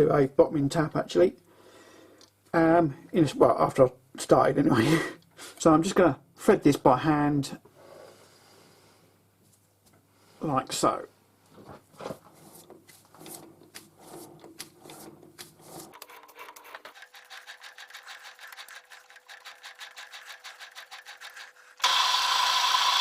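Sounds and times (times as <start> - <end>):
lathe chuck clicking: 13.3 - 23.0.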